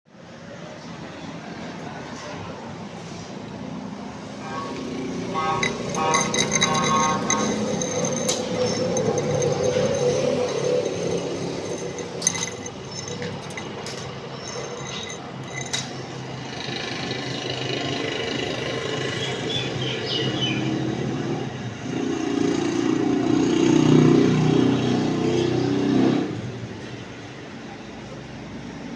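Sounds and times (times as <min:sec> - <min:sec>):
workshop machinery humming: 0:04.4 - 0:16.5.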